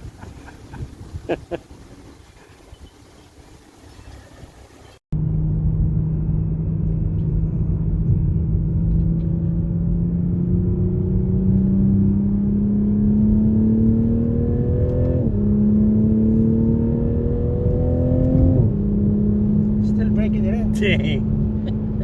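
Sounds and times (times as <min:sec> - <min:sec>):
car engine accelerating: 0:05.1 - 0:22.0.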